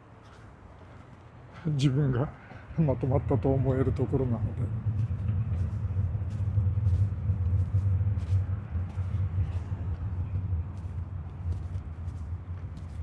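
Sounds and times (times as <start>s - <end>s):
faint footsteps: 0.0s - 13.0s
low rumble: 2.6s - 13.0s.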